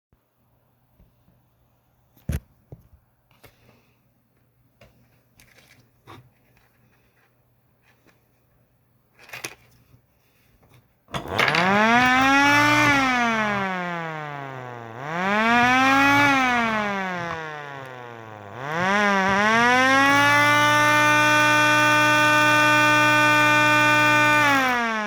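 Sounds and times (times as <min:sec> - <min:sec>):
outdoor warning siren: 0:11.4 - 0:25.0.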